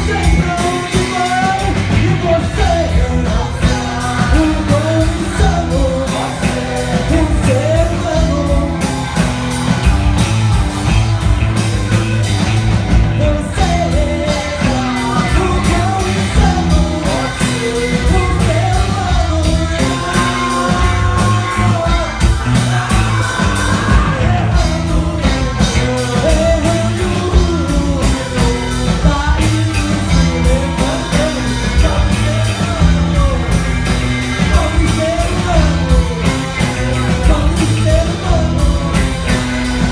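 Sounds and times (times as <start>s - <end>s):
person singing: 0.0s - 11.2s, 12.9s - 39.9s
rock band playing live: 0.0s - 39.9s.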